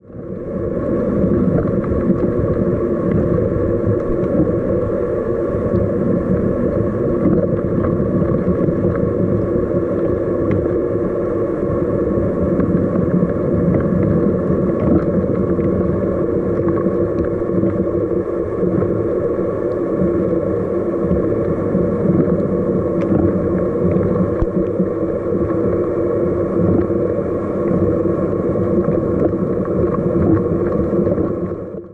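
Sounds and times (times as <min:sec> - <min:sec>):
faint ticks: 0:03.9 - 0:04.4, 0:22.2 - 0:24.9.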